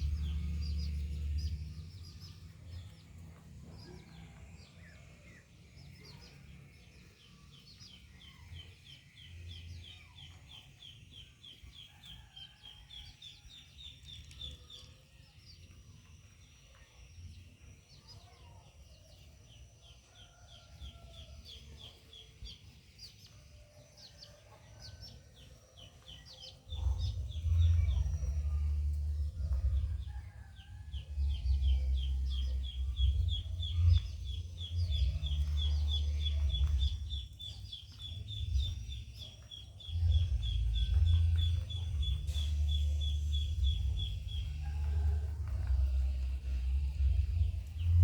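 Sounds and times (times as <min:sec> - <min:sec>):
loud low rumble: 0:00.0 - 0:06.3, 0:26.7 - 0:48.0
bird chirping: 0:00.0 - 0:48.0.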